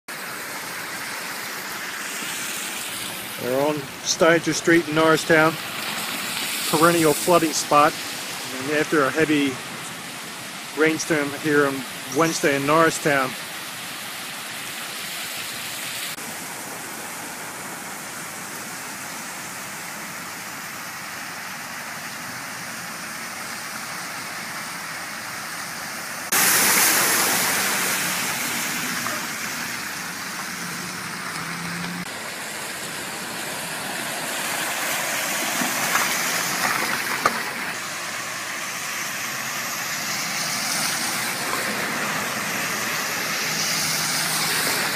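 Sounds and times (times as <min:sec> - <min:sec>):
floodwater rushing: 0:00.1 - 0:44.9.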